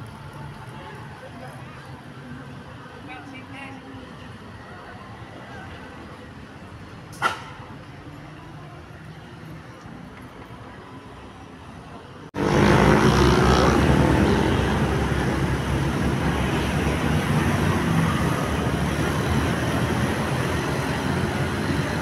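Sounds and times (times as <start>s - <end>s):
vehicle engine rushing: 12.4s - 22.0s.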